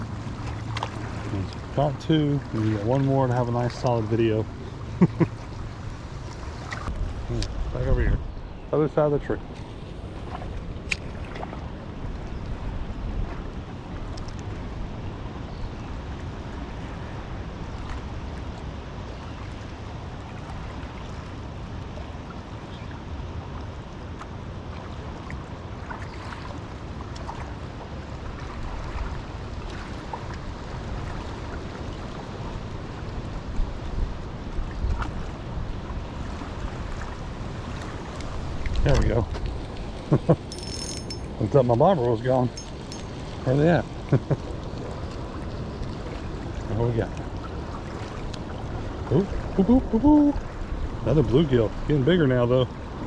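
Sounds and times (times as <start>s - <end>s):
wind buffeting microphone: 6.8s - 8.6s.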